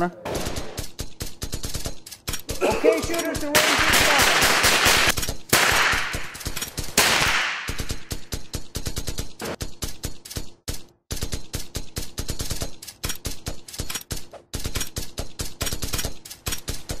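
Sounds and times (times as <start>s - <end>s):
rifles firing rapid shots: 0.3s - 9.2s.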